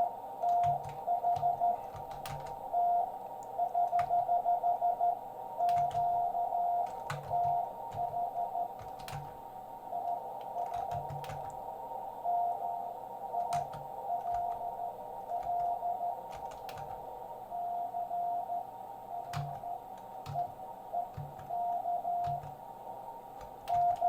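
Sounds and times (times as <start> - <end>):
morse code beeps: 0.0 - 9.2, 12.2 - 16.9, 17.5 - 22.6, 23.5 - 24.0
receiver hiss: 0.0 - 24.0
sharp clicks: 6.8 - 9.4, 15.3 - 17.0.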